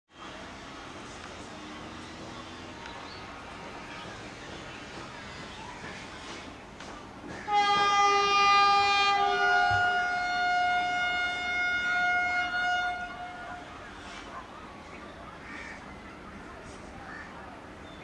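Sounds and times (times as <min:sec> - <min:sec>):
train horn blast: 0:07.4 - 0:13.7.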